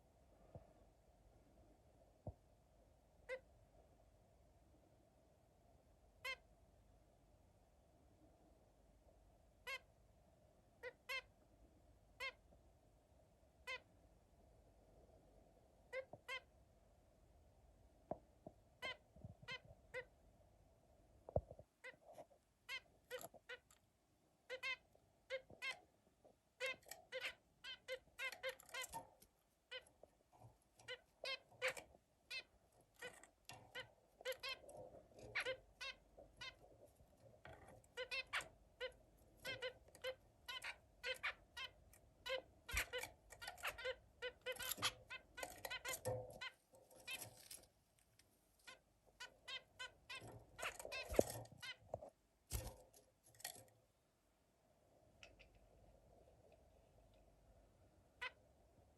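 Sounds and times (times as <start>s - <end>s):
zebra finch squeaky calls: 9.6s - 9.8s, 10.8s - 11.3s, 13.6s - 13.8s, 15.9s - 16.5s, 18.8s - 20.1s, 24.5s - 25.8s, 26.6s - 29.9s, 30.9s - 36.7s, 37.4s - 47.6s, 48.6s - 51.8s.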